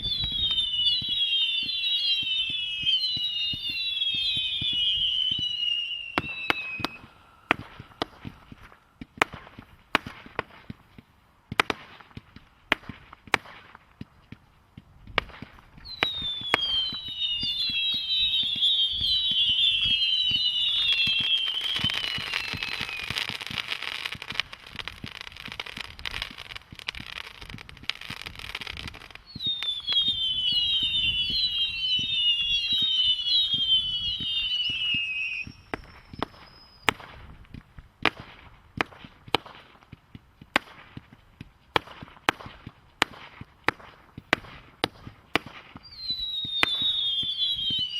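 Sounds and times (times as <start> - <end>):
firework whistles falling in pitch: 0.0 - 8.8, 15.7 - 37.3, 44.8 - 47.9
firework bangs: 0.0 - 47.9
firework crackling: 0.0 - 47.9.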